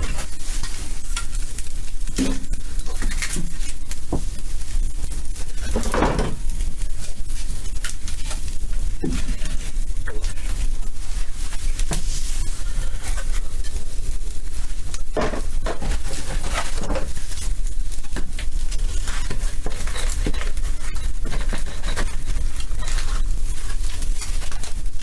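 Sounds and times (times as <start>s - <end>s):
fire crackling: 0.0s - 25.0s
knocks and clatters: 5.6s - 6.6s, 15.0s - 17.4s.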